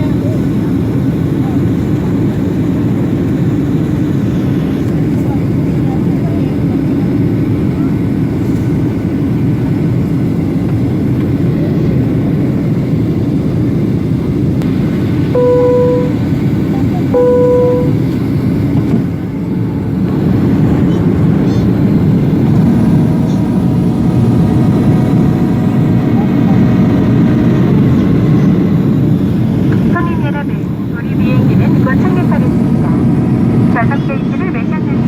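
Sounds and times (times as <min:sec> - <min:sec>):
airplane cabin rumble: 0:08.3 - 0:35.0
chime tones: 0:15.4 - 0:16.2, 0:17.2 - 0:18.0.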